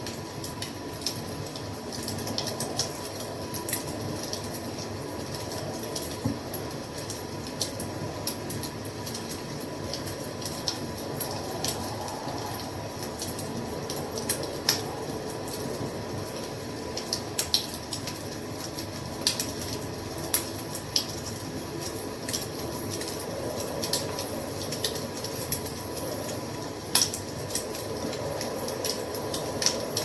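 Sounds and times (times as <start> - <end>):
wood fire crackling: 0.0 - 30.0.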